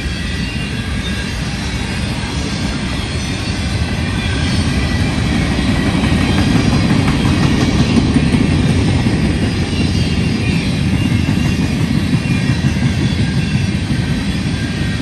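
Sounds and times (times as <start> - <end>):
train wheels rumbling on rails: 0.0 - 15.0.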